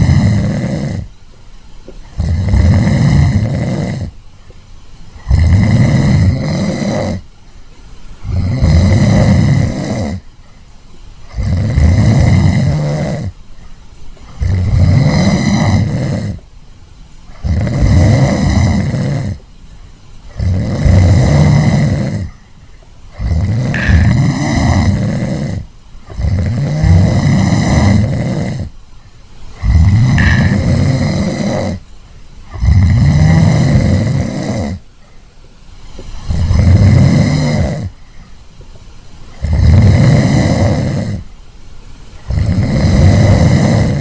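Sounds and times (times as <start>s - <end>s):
person snoring loudly: 0.0s - 1.2s, 2.0s - 4.2s, 5.2s - 7.3s, 8.2s - 10.3s, 11.2s - 13.4s, 14.2s - 16.5s, 17.3s - 19.4s, 20.3s - 22.4s, 23.1s - 28.8s, 29.6s - 31.8s, 32.4s - 34.9s, 36.2s - 38.0s, 39.3s - 41.3s, 42.2s - 44.0s.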